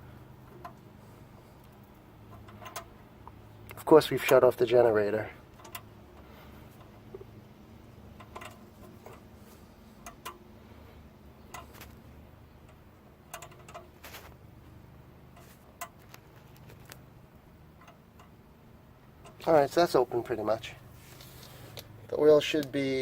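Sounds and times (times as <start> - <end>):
low steady hum: 0.0 - 23.0
small clicks and taps: 11.4 - 12.0.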